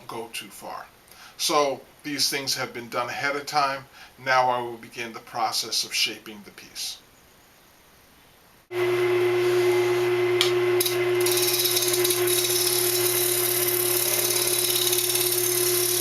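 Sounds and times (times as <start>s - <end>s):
wood lathe humming: 8.7s - 16.0s
chisel scraping spinning wood: 10.8s - 16.0s.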